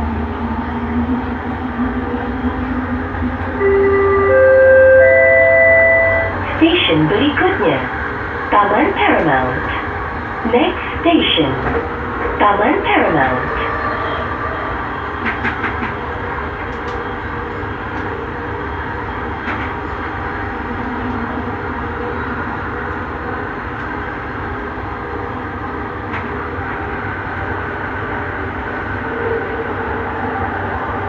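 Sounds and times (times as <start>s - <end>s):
train rumble from inside: 0.0s - 31.0s.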